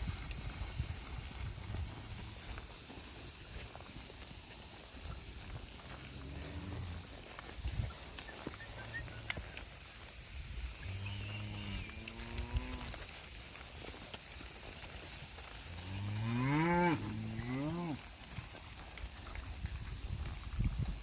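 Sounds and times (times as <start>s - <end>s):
cow mooing: 16.0s - 18.0s.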